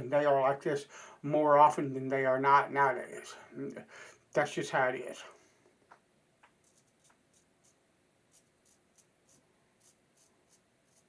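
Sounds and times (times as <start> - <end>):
razor scratching stubble: 6.6 - 11.0.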